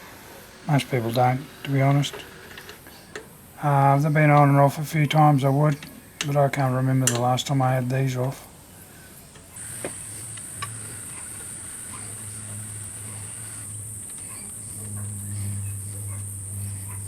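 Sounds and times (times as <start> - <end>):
low hum: 0.0 - 17.0
spanner metallic clicks: 0.8 - 8.5.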